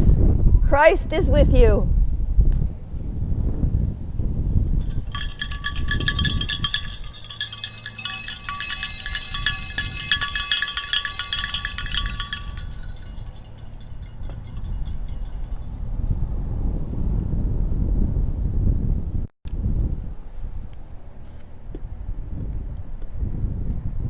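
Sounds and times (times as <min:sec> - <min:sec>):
wind rumble on microphone: 0:00.0 - 0:24.0
bells jingling: 0:04.8 - 0:15.6.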